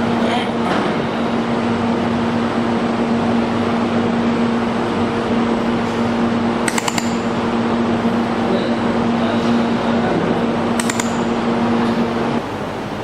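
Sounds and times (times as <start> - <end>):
welding machine humming: 0.0 - 13.0
sharp clicks: 6.6 - 7.2, 10.8 - 11.3.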